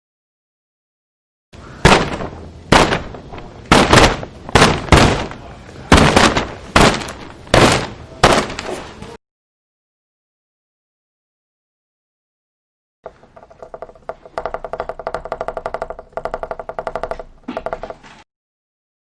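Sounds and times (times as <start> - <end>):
sharp impacts: 1.6 - 8.9.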